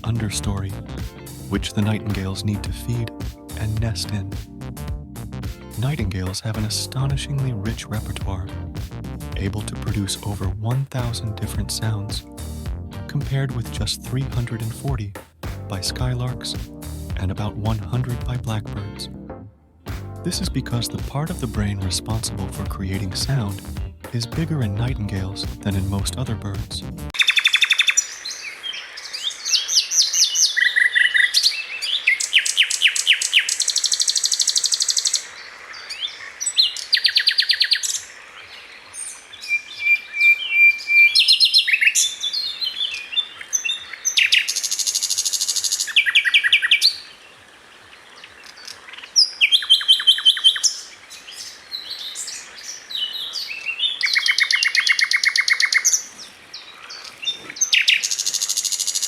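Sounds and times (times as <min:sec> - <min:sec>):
nightingale singing: 0:27.2 - 0:59.0.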